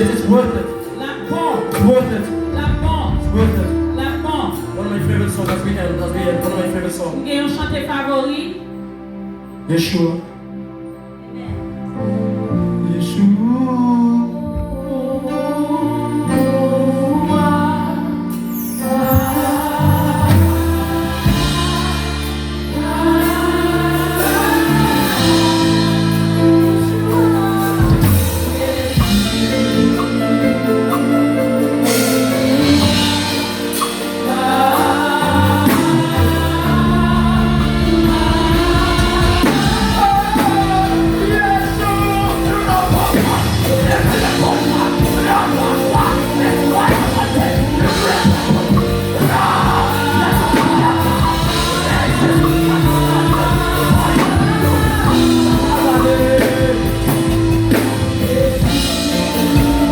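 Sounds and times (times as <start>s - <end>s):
voices singing gospel song: 0.0s - 8.1s, 11.4s - 59.9s
steady beat: 31.9s - 59.9s.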